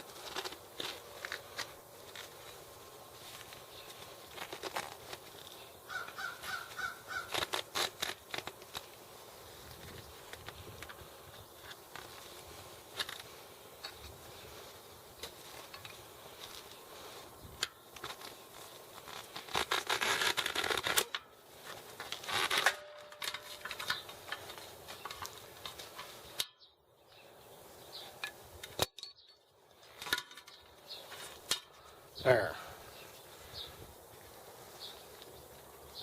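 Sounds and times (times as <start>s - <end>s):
rubber scraping against rim: 3.3s - 9.0s, 18.0s - 26.4s.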